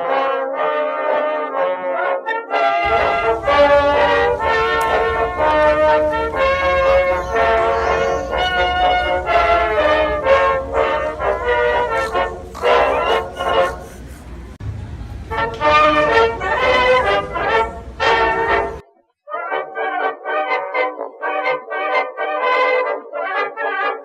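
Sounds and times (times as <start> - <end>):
brass playing slow melody: 0.0 - 18.8
low steady rumble: 2.9 - 7.2, 9.1 - 18.8.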